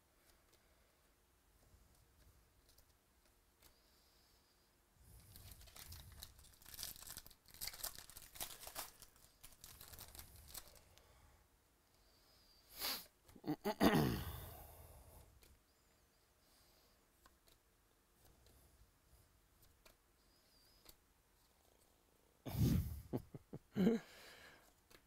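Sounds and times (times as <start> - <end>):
wrapper tearing and crinkling: 5.2 - 10.8.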